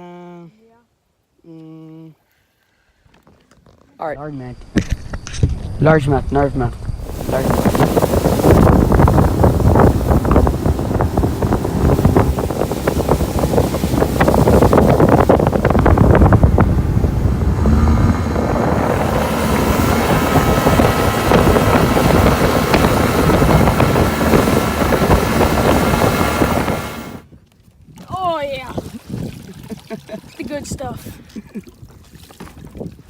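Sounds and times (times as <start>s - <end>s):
wind buffeting microphone: 4.8s - 31.2s, 31.8s - 33.0s
boat motor humming: 7.0s - 27.2s.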